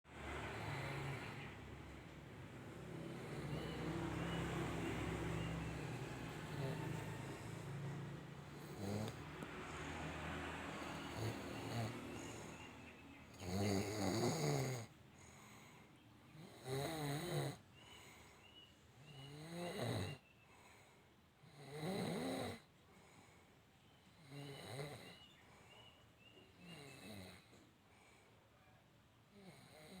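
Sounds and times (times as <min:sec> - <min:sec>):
person snoring: 0:00.2 - 0:01.9, 0:02.7 - 0:14.9, 0:19.1 - 0:20.2.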